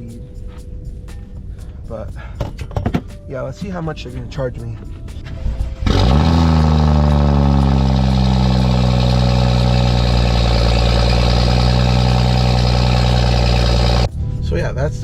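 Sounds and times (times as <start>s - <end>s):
car engine cold idle: 5.7s - 14.1s.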